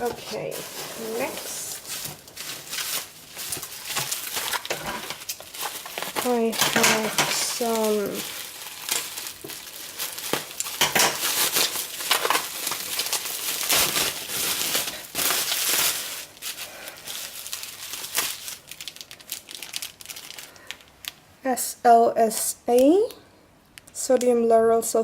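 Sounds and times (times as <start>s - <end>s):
packaging crinkling and rustling: 0.0s - 21.3s.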